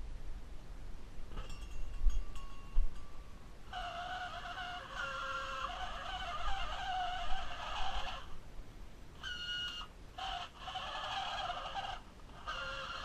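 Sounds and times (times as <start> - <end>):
toy car motor whirring: 3.8 - 8.3.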